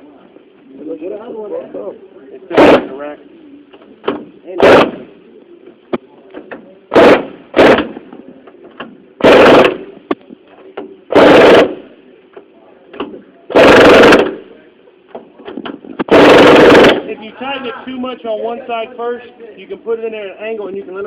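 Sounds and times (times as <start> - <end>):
impact wrench hammering: 4.0 - 5.1, 6.5 - 8.0, 9.2 - 9.8, 10.8 - 11.8, 13.0 - 14.4, 15.6 - 17.0.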